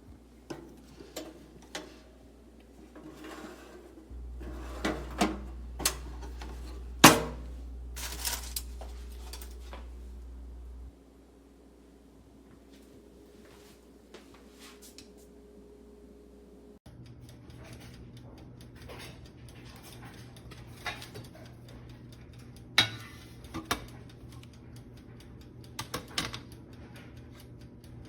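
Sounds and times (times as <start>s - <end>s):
low steady hum: 3.8s - 18.6s
light clicks and clatter: 17.1s - 28.0s.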